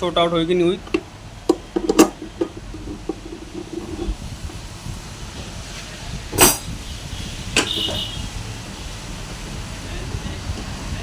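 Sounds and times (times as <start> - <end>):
low steady rumble: 0.0 - 11.0
spanner metal clacks: 6.3 - 6.7.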